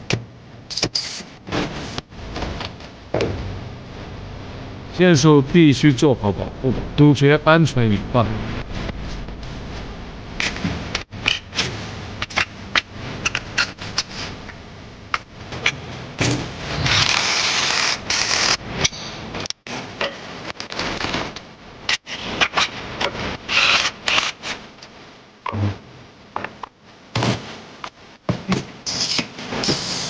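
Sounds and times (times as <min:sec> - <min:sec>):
hiss: 0:28.9 - 0:30.0.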